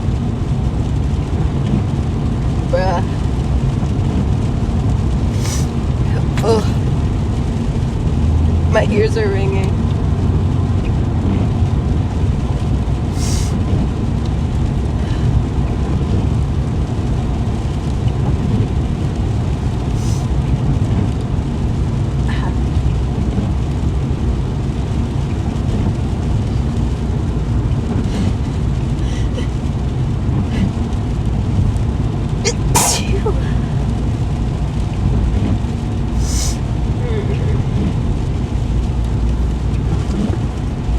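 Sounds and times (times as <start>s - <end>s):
car engine and tyres rumbling: 0.0s - 40.9s
short hissing sounds: 5.4s - 5.8s, 13.2s - 13.6s, 20.0s - 20.3s, 36.2s - 36.6s.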